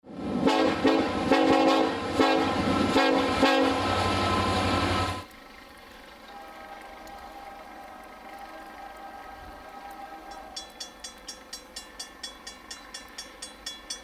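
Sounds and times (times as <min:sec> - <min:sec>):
locomotive air horn: 0:00.4 - 0:05.2, 0:06.2 - 0:10.8.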